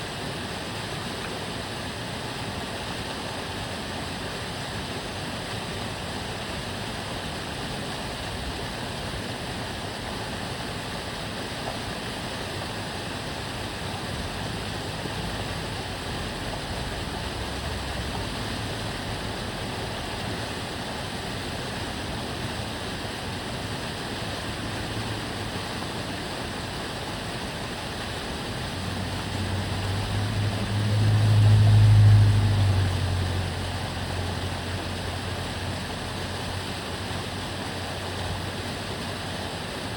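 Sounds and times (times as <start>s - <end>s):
stream water running: 0.0s - 39.9s
car passing: 28.0s - 36.2s.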